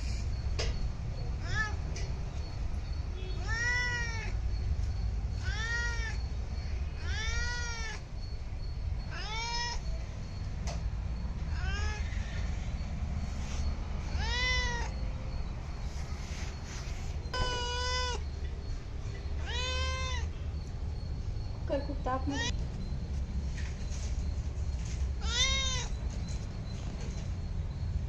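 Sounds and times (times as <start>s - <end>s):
cat meowing: 1.4s - 1.9s, 3.4s - 4.4s, 5.4s - 6.2s, 7.0s - 8.0s, 9.1s - 9.9s, 11.5s - 12.3s, 14.1s - 15.0s, 17.3s - 18.3s, 19.4s - 20.3s, 22.3s - 22.6s, 25.2s - 26.0s.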